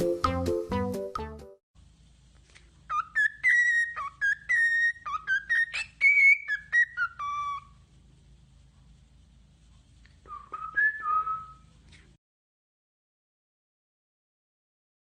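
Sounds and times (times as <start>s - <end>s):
parrot whistling: 2.9s - 7.8s, 10.2s - 11.7s.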